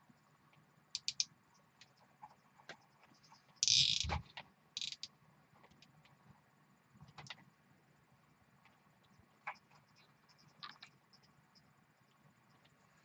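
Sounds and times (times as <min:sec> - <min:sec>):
zip tie ratcheting: 0:03.6 - 0:04.2, 0:04.8 - 0:05.1.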